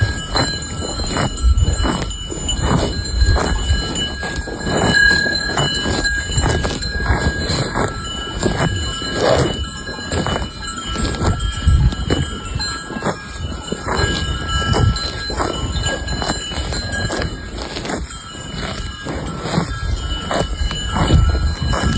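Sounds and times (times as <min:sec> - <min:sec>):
cowbells clanking: 0:00.0 - 0:21.9.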